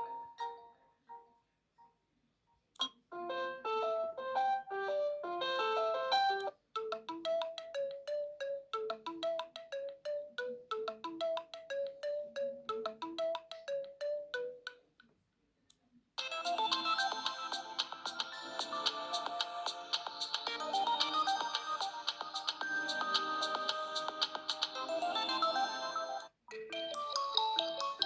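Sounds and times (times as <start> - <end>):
phone ringtone melodies: 0.0 - 1.2, 3.1 - 14.8, 16.2 - 28.0.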